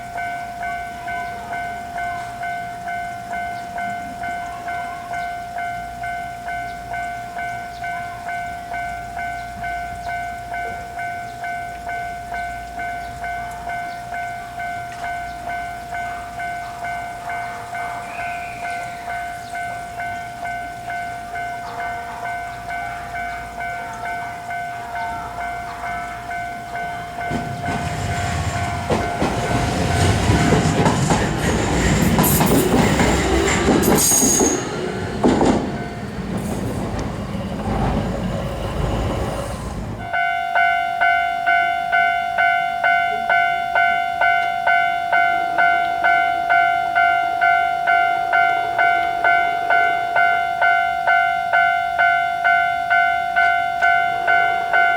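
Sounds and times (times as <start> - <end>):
level crossing bell clanging: 0.0 - 54.9
train wheels on rails: 12.4 - 40.3.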